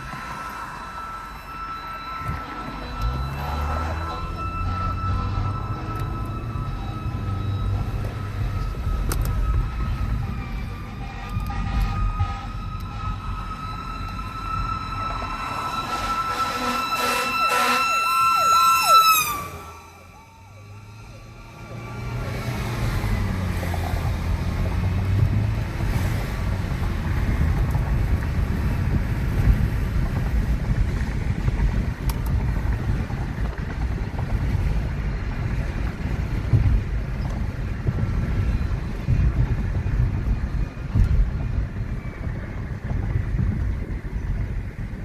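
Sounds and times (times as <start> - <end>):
wind buffeting microphone: 0.0 - 16.5, 20.6 - 45.0
siren: 0.0 - 30.6
vehicle engine rumble: 0.0 - 45.0.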